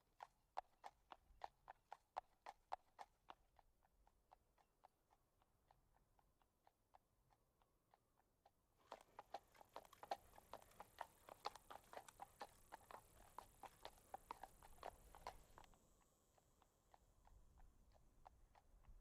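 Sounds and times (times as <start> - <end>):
quick clicking footsteps: 8.8 - 15.8
faint hiss: 9.0 - 19.0.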